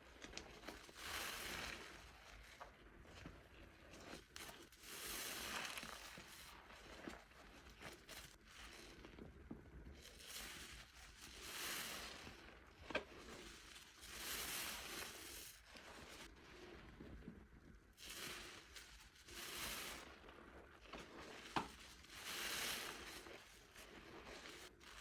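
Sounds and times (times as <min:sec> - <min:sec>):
small clicks and pops: 0:00.0 - 0:01.0
soap foam squeezed crackly hissing: 0:00.0 - 0:25.0.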